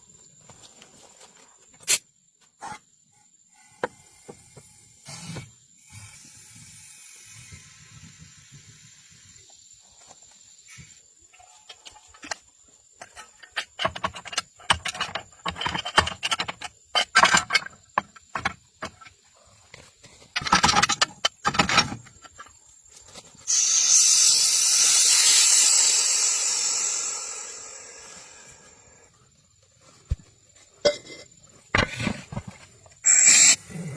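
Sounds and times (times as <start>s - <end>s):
steady hiss: 3.5s - 15.0s, 22.4s - 33.9s.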